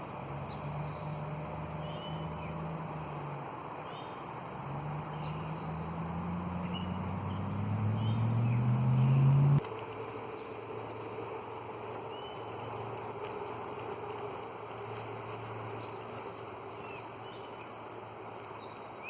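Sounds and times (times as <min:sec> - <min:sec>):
high-pitched insect trill: 0:00.0 - 0:09.6, 0:10.3 - 0:19.0
low hum rising in pitch: 0:04.8 - 0:09.6.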